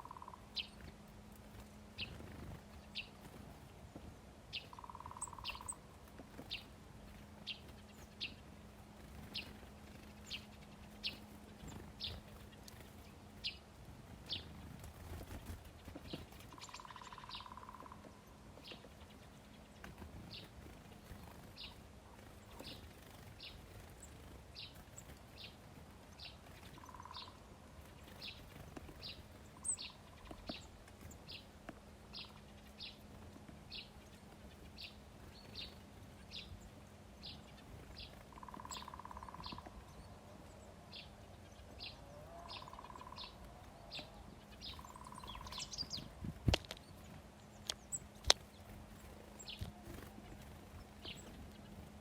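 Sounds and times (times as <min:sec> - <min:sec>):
lower bird calls: 0:00.0 - 0:01.1, 0:04.5 - 0:06.7, 0:07.4 - 0:31.5, 0:32.1 - 0:52.0
songbird calling high notes: 0:42.1 - 0:46.1.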